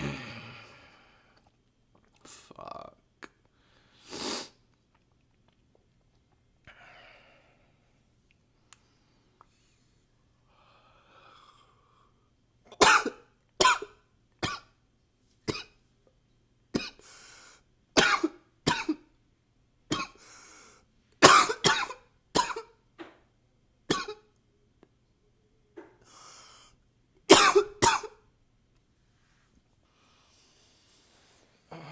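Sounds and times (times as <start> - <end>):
man coughing: 12.8 - 13.8, 21.2 - 22.7, 27.3 - 28.1.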